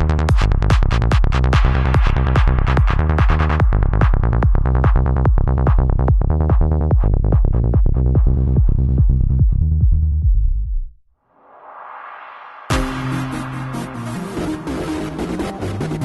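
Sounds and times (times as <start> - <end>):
electronic dance music: 0.0 - 5.0, 12.7 - 16.0.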